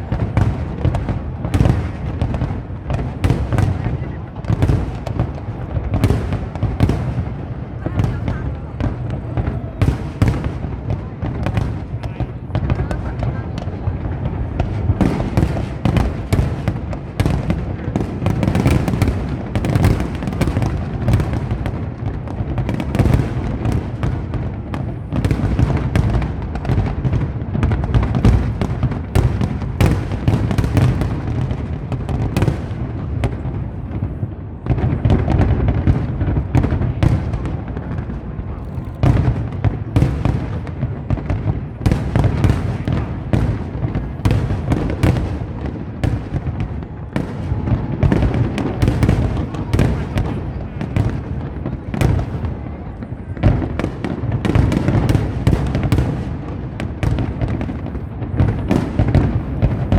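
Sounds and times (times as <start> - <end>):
fireworks bursting: 0.0 - 59.9
fireworks crackle: 0.0 - 59.9.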